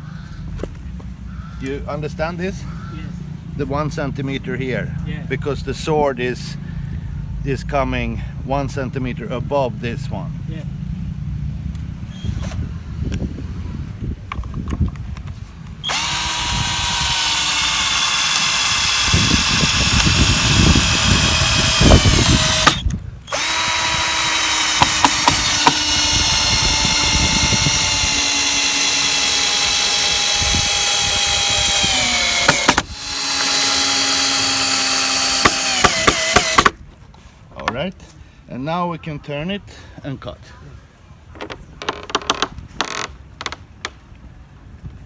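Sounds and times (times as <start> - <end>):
drill-driver driving screws: 15.8 - 36.8.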